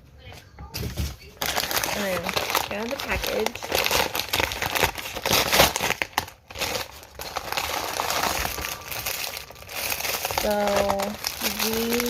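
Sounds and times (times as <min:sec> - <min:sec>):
packaging rustling: 0:01.3 - 0:12.0.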